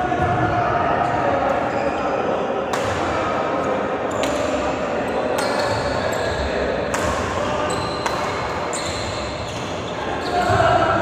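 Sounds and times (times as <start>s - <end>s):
rackets hitting shuttlecock: 2.7s - 3.3s, 4.1s - 6.0s, 6.9s - 9.8s.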